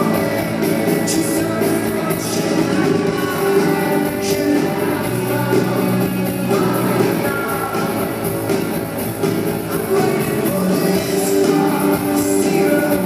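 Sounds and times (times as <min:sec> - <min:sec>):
person singing: 0:00.0 - 0:08.3, 0:09.4 - 0:13.0
live rock band playing: 0:00.0 - 0:13.0.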